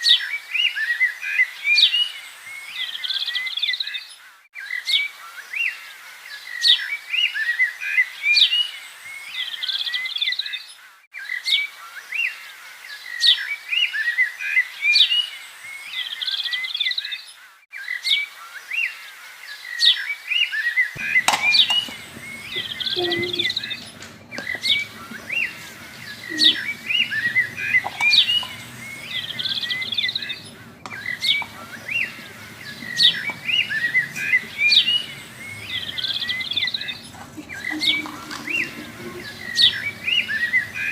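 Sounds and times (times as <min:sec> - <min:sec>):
birds chirping and whistling: 0:21.0 - 0:40.9
faint low hum: 0:21.0 - 0:40.9.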